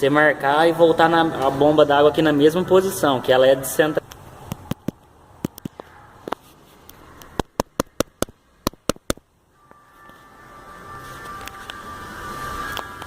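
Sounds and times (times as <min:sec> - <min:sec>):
faint steady tone: 0:09.3 - 0:13.0.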